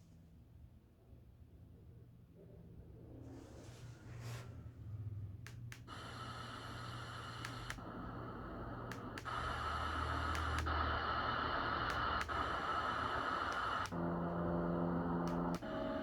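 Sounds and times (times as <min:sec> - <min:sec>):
clicks: 0:05.5 - 0:16.0
white-noise machine hiss: 0:05.6 - 0:16.0.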